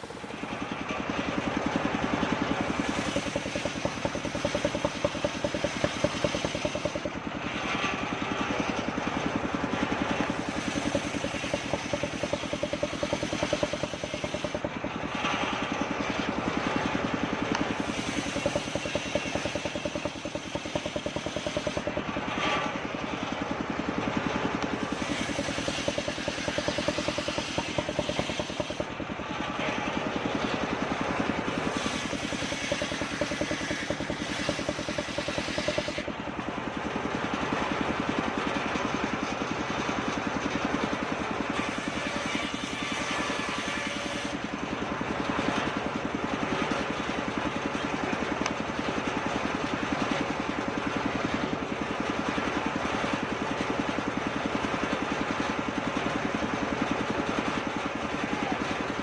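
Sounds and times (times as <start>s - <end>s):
circular saw cutting wood: 0.0s - 36.6s, 41.4s - 44.5s.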